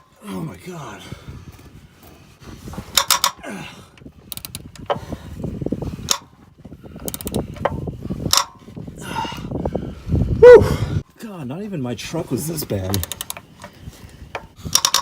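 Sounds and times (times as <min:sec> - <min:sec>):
tool creaking and clinking: 0:02.7 - 0:03.4, 0:07.0 - 0:08.7, 0:12.7 - 0:15.0
ratchet clicking: 0:14.3 - 0:15.0.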